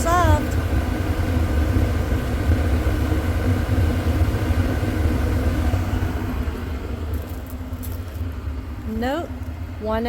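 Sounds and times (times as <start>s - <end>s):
furnace low rumble: 0.0s - 10.0s.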